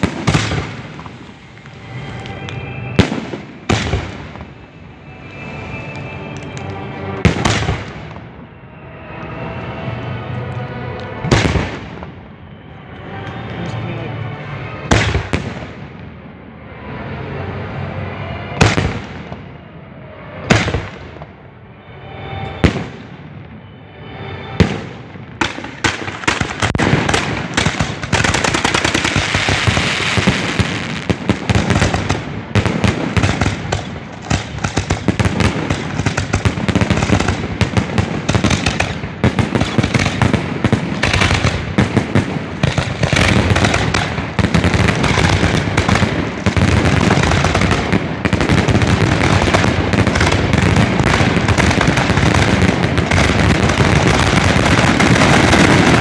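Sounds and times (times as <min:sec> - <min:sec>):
rapid fireworks barrage: 0:00.0 - 0:08.8, 0:11.1 - 0:12.3, 0:14.6 - 0:16.0, 0:20.3 - 0:21.4, 0:24.6 - 0:56.0
fireworks shell reports: 0:11.1 - 0:15.8.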